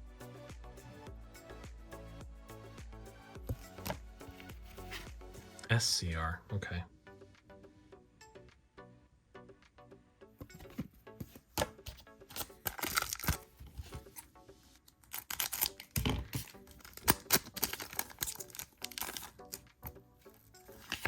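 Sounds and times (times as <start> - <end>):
light background music: 0.0 - 21.0
cards being handled: 3.5 - 5.7, 10.4 - 21.0
foil pack tearing and crinkling: 12.4 - 14.1, 15.0 - 19.7.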